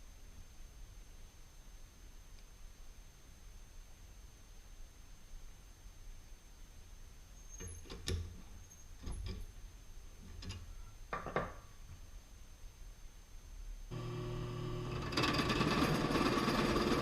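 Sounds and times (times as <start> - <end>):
faint high-pitched whine: 0.0 - 16.8.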